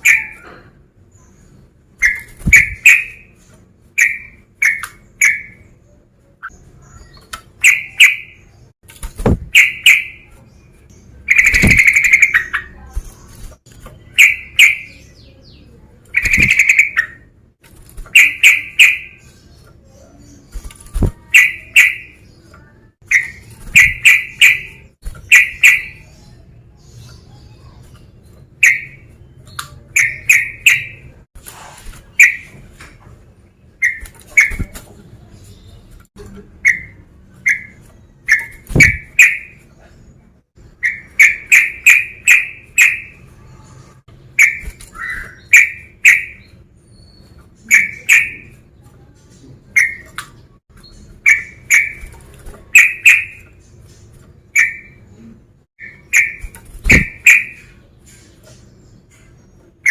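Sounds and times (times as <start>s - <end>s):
bulbul calling: 0.0s - 0.7s, 2.0s - 3.3s, 4.0s - 5.7s, 6.4s - 8.5s, 9.2s - 10.3s, 11.2s - 13.1s, 14.0s - 15.2s, 16.2s - 17.3s, 18.1s - 19.3s, 21.0s - 22.3s, 23.0s - 26.1s, 28.6s - 31.2s, 32.1s - 32.6s, 36.6s - 39.7s, 40.7s - 43.2s, 44.4s - 48.7s, 49.7s - 53.6s, 54.5s - 55.2s, 55.8s - 57.8s
low thumps: 9.1s - 9.6s.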